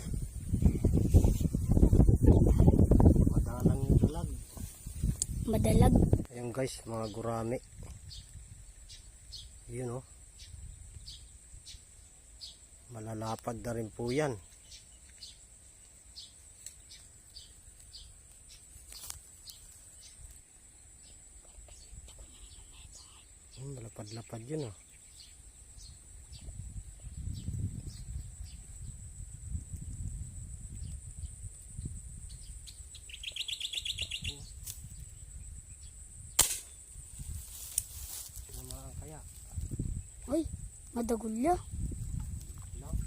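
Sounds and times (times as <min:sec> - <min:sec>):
bird chirping: 0:00.2 - 0:13.3, 0:14.1 - 0:15.5, 0:16.1 - 0:29.0, 0:30.8 - 0:36.9
sharp click: 0:36.4 - 0:36.8.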